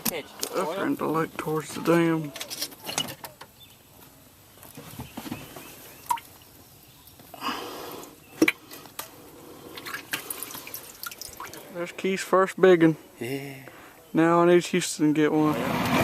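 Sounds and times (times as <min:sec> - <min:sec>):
water splashing and dripping: 0:05.9 - 0:07.4, 0:08.0 - 0:11.8.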